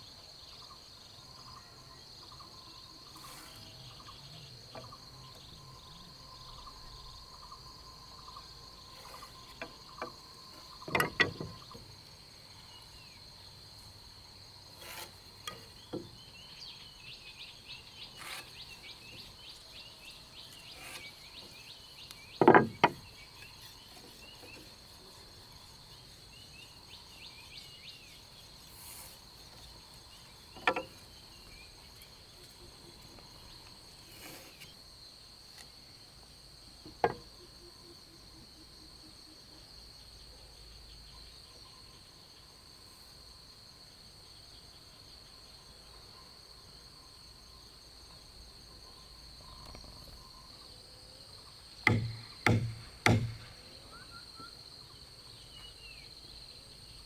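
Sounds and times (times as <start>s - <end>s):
faint chirping: 0.0s - 57.0s
insects droning: 0.0s - 57.0s
wooden knocks of timber: 9.2s - 11.9s, 22.3s - 23.2s, 30.6s - 31.1s, 36.8s - 37.3s, 51.8s - 53.6s.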